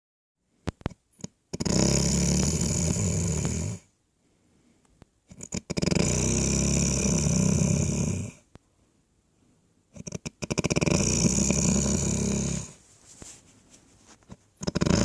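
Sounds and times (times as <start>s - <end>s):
rough snoring: 1.2s - 3.9s, 5.3s - 8.4s, 9.9s - 12.8s, 14.6s - 15.0s.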